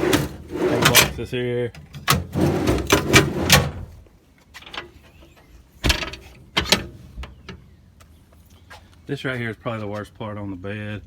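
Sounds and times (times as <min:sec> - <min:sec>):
metal latches and panels rattling: 0:00.0 - 0:04.0, 0:04.6 - 0:07.6.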